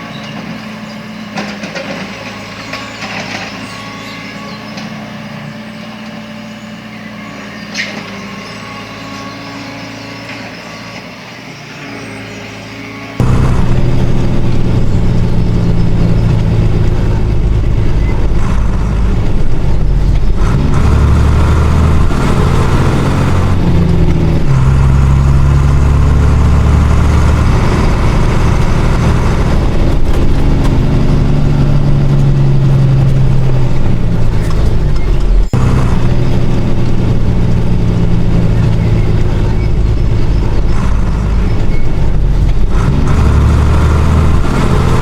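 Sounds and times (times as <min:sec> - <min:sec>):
loud engine running: 0:00.0 - 0:45.0.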